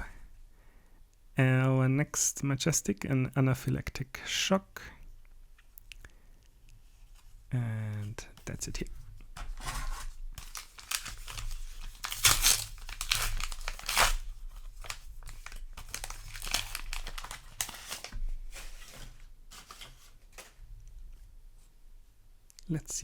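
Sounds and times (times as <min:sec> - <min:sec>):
foil wrapper tearing and crinkling: 0:09.7 - 0:20.0.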